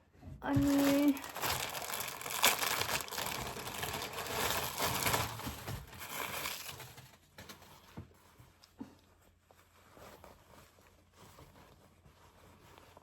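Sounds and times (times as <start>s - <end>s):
packaging crinkling and rustling: 0.4s - 8.7s.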